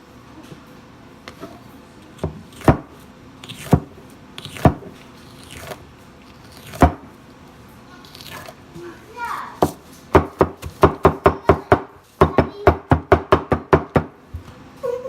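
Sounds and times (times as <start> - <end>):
cleaver chopping: 2.2 - 5.8, 6.5 - 7.1, 9.6 - 12.5.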